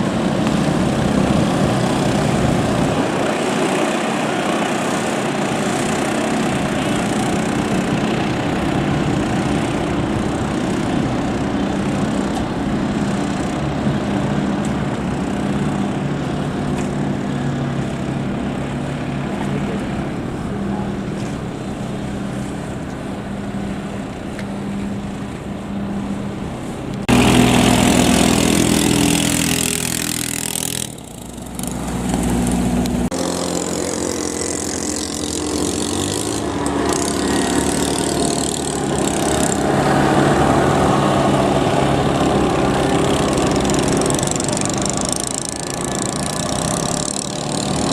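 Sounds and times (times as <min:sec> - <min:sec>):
boat engines buzzing drone: 0:00.0 - 0:47.9.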